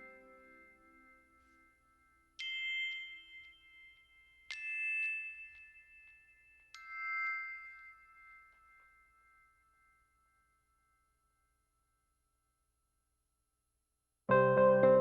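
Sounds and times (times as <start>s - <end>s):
background music: 14.3s - 15.0s.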